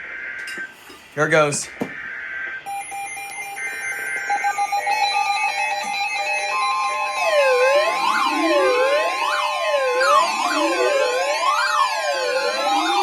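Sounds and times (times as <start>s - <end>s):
siren-like wail: 1.9s - 13.0s
steady alert tone: 4.4s - 13.0s.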